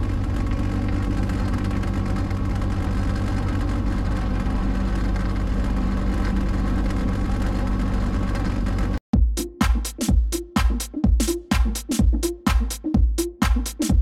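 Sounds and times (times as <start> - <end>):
electronic dance music: 9.2 - 14.0.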